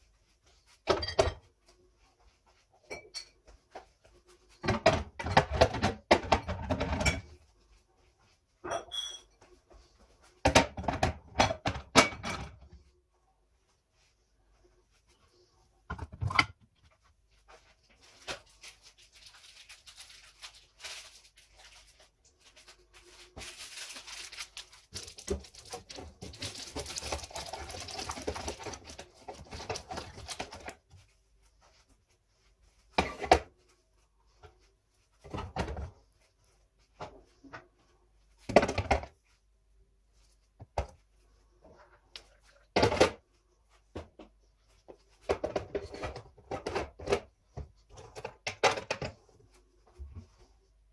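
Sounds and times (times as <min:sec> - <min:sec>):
packaging rustling: 0:18.1 - 0:30.7.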